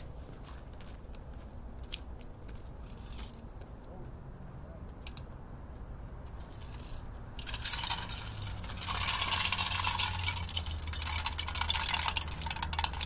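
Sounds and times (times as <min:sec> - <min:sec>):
aluminium cans clinking and rattling: 0:06.5 - 0:13.0.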